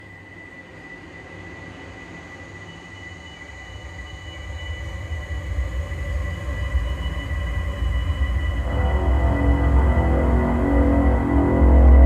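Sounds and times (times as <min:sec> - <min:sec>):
dark ambient drone music: 0:00.0 - 0:12.0.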